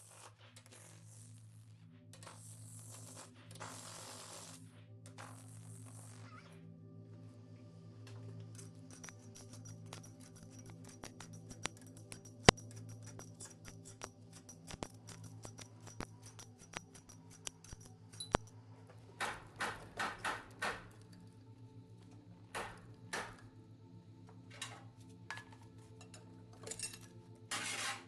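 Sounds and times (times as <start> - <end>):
low droning music: 0.0 - 28.0
hand tools clinking on metal: 8.4 - 18.6, 24.5 - 28.0
sharp ticks: 8.5 - 18.6.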